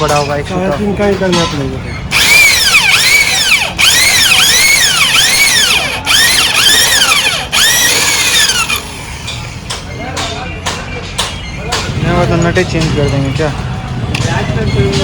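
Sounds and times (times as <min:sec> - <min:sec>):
electric drill whining in metal: 0:02.1 - 0:09.5.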